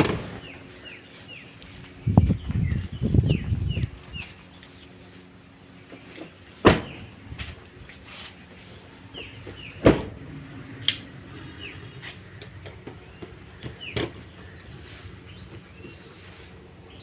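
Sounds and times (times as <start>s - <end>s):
small birds chirping: 0.4s - 7.2s, 8.7s - 9.8s, 11.0s - 17.0s
car door slamming: 6.6s - 7.1s, 9.8s - 10.2s.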